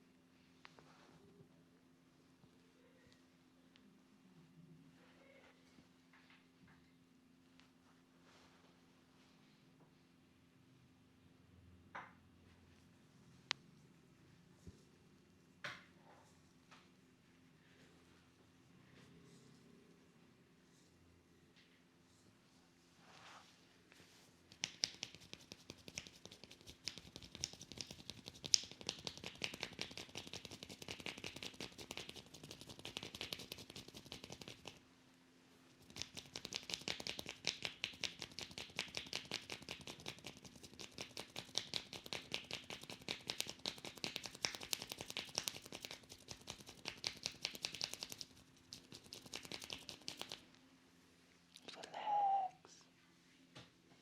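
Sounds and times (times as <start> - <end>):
hands scratching over hair: 23.0 - 34.8, 35.8 - 50.4.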